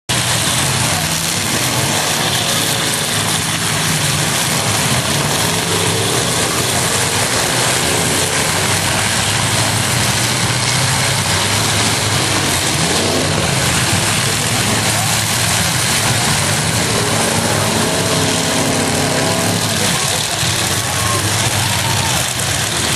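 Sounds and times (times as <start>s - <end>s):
truck engines droning: 0.1s - 22.9s.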